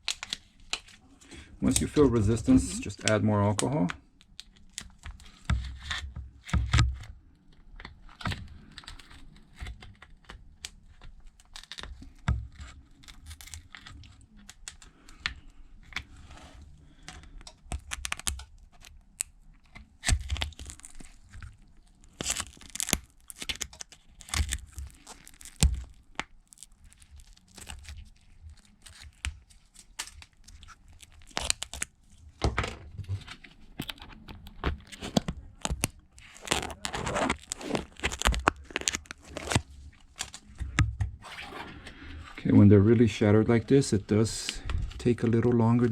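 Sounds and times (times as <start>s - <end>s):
adhesive tearing loose: 8.1s - 16.1s, 16.9s - 32.4s, 33.2s - 42.0s.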